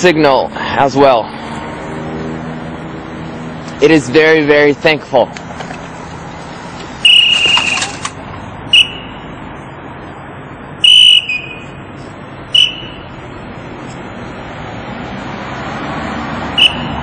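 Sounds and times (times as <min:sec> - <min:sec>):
traffic hum: 0:00.0 - 0:17.0
traffic whistle blasts: 0:07.0 - 0:08.1, 0:08.7 - 0:09.3, 0:10.8 - 0:11.9, 0:12.5 - 0:13.1, 0:16.5 - 0:17.0.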